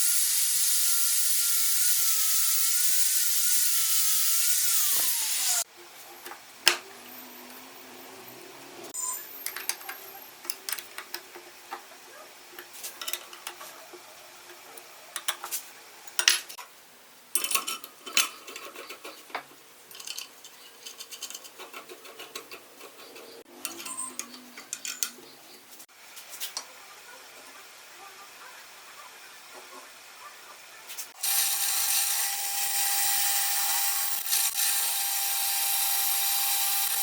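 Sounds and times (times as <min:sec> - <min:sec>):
metal parts clinking: 0:09.0 - 0:11.4, 0:12.6 - 0:13.7, 0:17.4 - 0:25.3.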